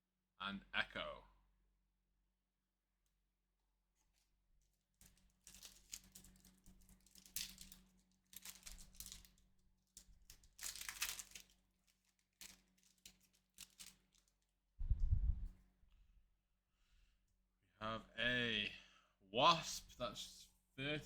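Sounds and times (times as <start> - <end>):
foil wrapper tearing and crinkling: 4.1 - 14.6.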